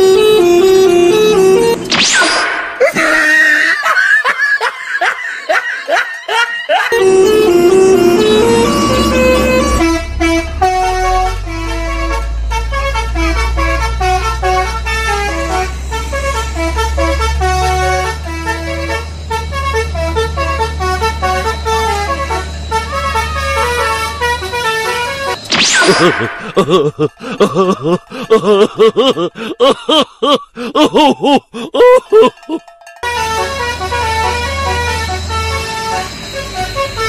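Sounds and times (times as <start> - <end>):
bus horn playing a tune: 0.0 - 1.9, 6.9 - 25.4, 33.0 - 37.0
low engine hum: 0.0 - 1.9, 7.0 - 25.4.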